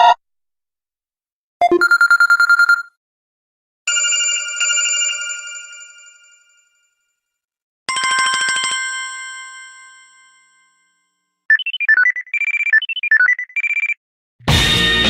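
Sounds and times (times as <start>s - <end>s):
electronic beeping melody: 11.5s - 14.0s.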